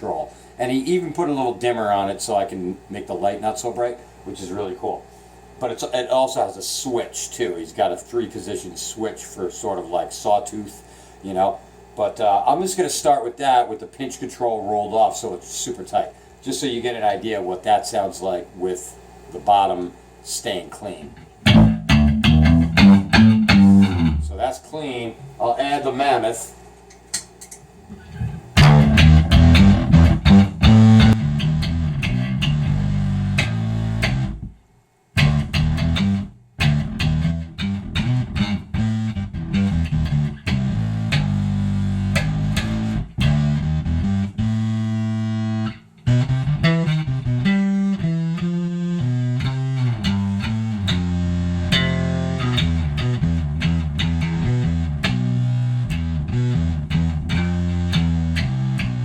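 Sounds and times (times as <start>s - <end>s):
fuzz electric bass notes: 21.4s - 24.6s, 27.9s - 34.6s, 35.2s - 59.0s.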